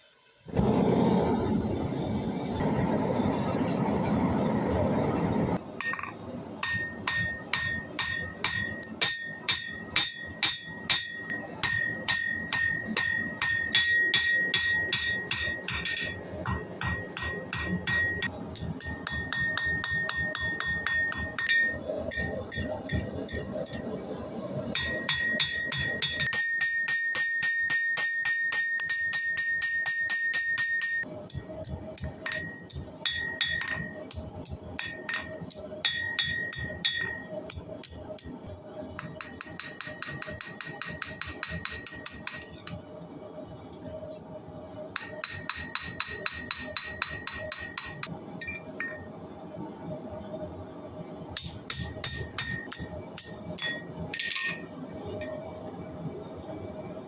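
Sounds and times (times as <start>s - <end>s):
hammer striking anvil: 5.8s - 23.9s, 24.7s - 38.3s, 39.0s - 42.8s, 45.0s - 49.1s, 51.4s - 54.7s.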